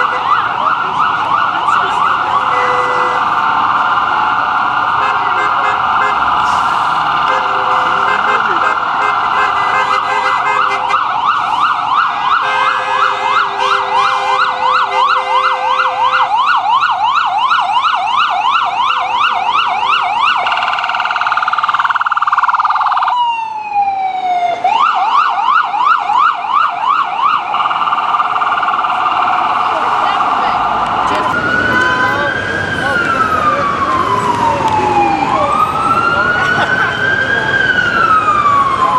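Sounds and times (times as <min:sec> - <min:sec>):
ambulance siren yelping: 0:00.0 - 0:38.9
steady siren: 0:00.0 - 0:38.9
vehicle horn blaring: 0:02.5 - 0:03.3, 0:07.3 - 0:11.0, 0:12.4 - 0:16.1.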